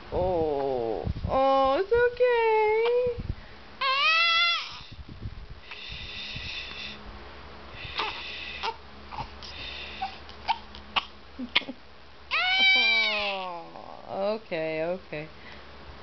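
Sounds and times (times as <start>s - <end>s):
baby whimpering: 3.8s - 5.0s, 7.9s - 9.4s, 12.3s - 14.0s
baby hiccups: 10.5s - 11.1s.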